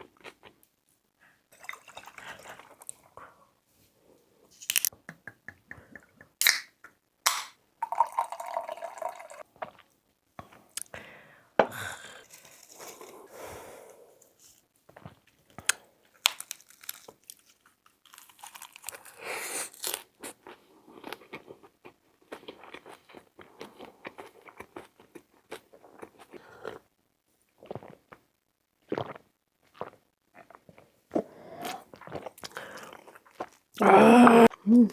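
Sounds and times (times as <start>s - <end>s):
person chewing and crunching: 12.0s - 13.4s, 15.0s - 26.8s, 27.6s - 28.2s, 28.8s - 34.6s.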